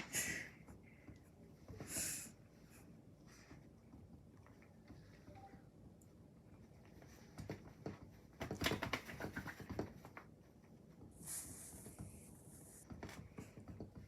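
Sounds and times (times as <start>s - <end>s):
soft rustling hiss: 0.0s - 14.0s
small dog claws pattering: 6.9s - 11.0s.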